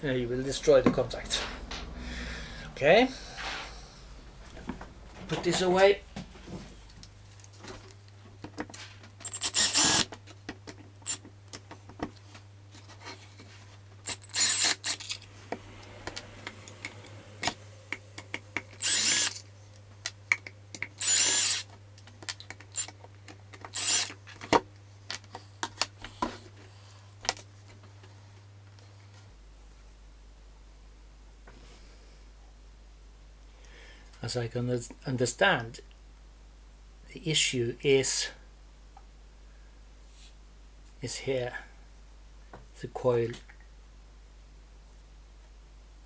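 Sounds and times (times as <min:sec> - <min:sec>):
handheld power tool whining: 0:00.8 - 0:05.9, 0:09.2 - 0:10.1, 0:14.0 - 0:19.5, 0:20.9 - 0:21.7, 0:22.7 - 0:23.0, 0:23.6 - 0:24.2
clicks and knocks of parts: 0:14.1 - 0:26.3.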